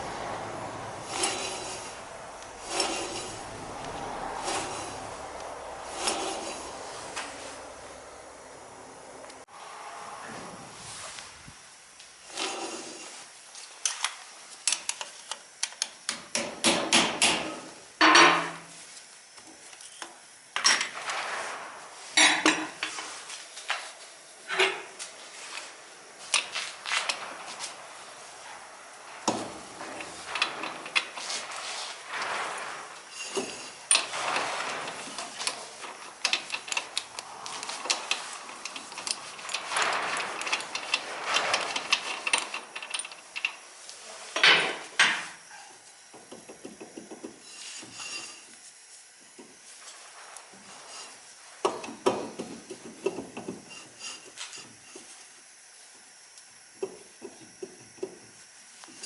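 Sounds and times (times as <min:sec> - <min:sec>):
metal tools clanking and scraping: 0:00.7 - 0:08.1, 0:24.5 - 0:45.7, 0:47.4 - 0:48.6, 0:49.8 - 0:52.0, 0:53.3 - 0:55.2.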